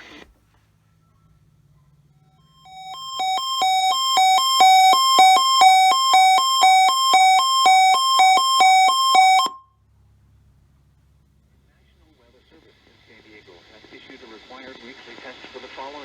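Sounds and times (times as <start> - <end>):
two-tone warning alarm: 2.5 - 9.7.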